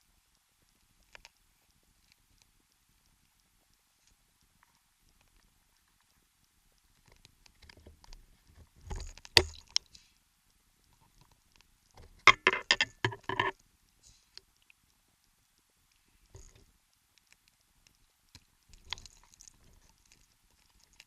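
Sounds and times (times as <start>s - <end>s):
sharp knocks and clicks: 12.0s - 13.6s.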